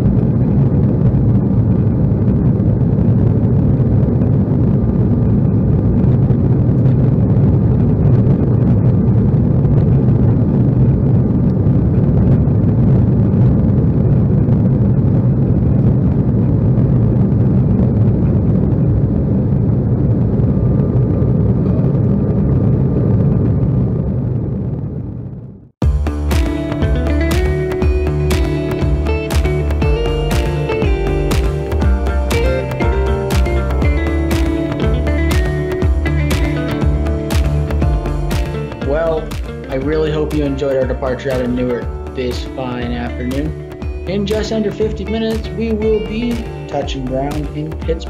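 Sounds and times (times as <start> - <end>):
jet engines at high power: 0.0 - 25.8
faint steady whine: 0.0 - 48.0.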